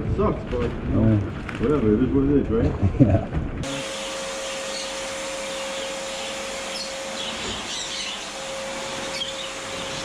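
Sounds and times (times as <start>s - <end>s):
machine whir: 3.6s - 10.0s
small birds chirping: 4.5s - 10.0s.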